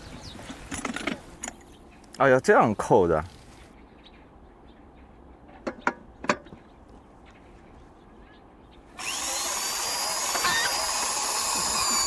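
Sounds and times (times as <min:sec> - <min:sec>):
power tool whirring: 0:09.0 - 0:12.0.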